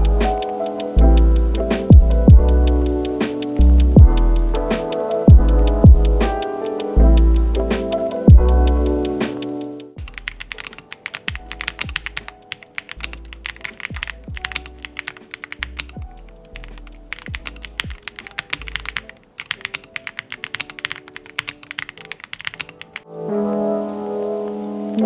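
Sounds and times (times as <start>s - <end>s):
background music with drums: 1.6s - 6.4s
mechanical keyboard typing: 10.0s - 23.0s.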